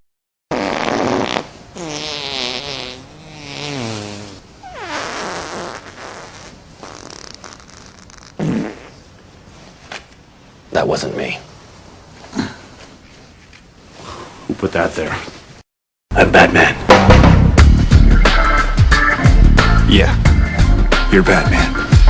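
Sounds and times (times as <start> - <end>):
fart noise: 0.5 - 9.0.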